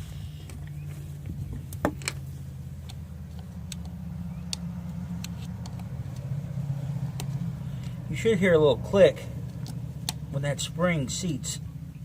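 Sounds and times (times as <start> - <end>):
light metallic clicks and taps: 2.8 - 6.3.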